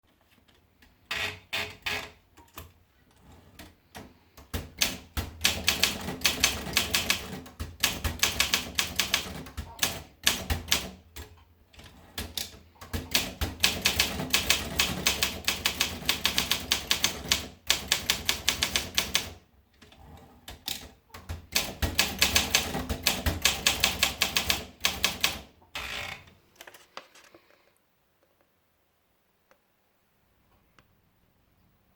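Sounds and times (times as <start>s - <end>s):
manual typewriter keystrikes: 3.9s - 19.4s, 20.5s - 25.9s.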